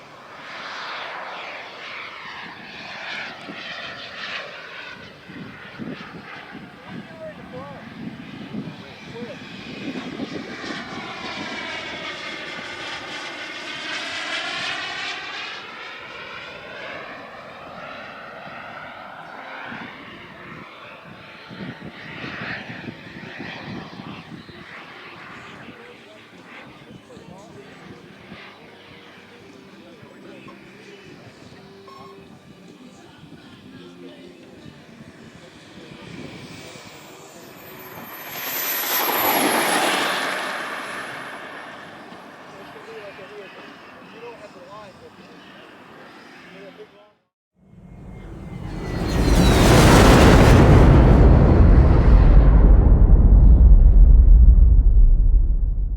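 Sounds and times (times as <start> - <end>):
high turbine whine: 34.4 - 45.3, 47.7 - 55.9
model jet turbine whining: 35.1 - 44.6.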